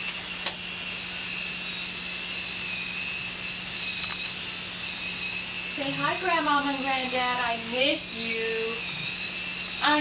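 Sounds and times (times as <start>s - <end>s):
camcorder mechanism whine and hum: 0.0s - 10.0s
sharp click: 4.0s - 4.4s.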